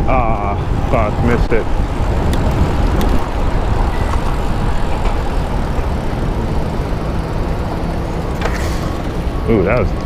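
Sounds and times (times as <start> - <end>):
wind and road noise: 0.0 - 10.0.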